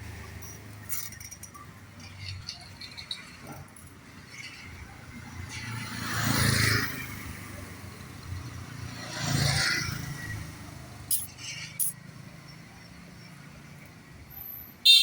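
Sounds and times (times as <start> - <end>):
motor vehicles passing by: 0.0 - 14.8.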